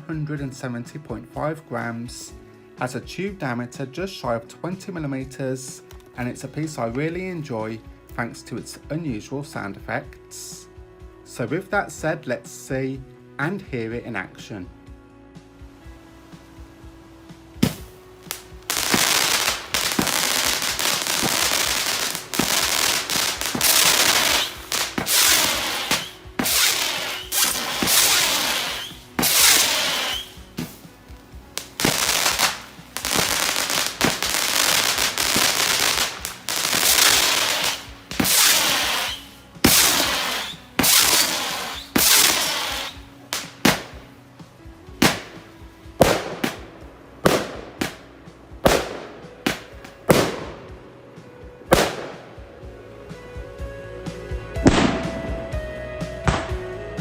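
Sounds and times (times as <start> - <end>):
fireworks hissing and zipping: 15.9 - 44.2, 44.9 - 50.7
firework launch reports: 17.6 - 30.9, 31.5 - 44.0, 48.6 - 50.7
crackling firework bursts: 17.6 - 44.2, 44.9 - 50.8, 51.7 - 52.5.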